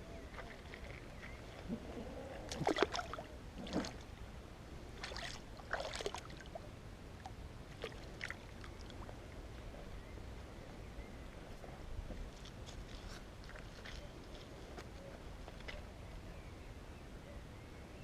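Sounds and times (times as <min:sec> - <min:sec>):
water splashing: 0:00.3 - 0:04.1, 0:05.0 - 0:06.6, 0:07.2 - 0:09.2.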